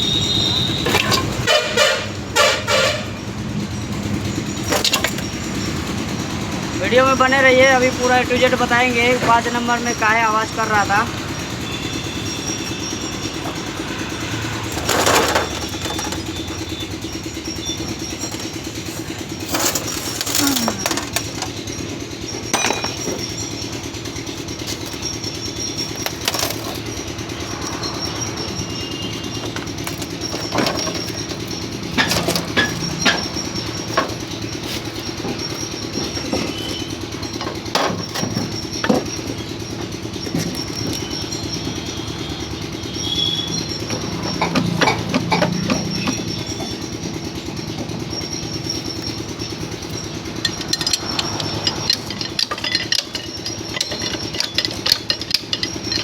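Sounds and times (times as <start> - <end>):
engine idling: 0.0 - 56.0
metallic clinks and knocks: 11.4 - 56.0.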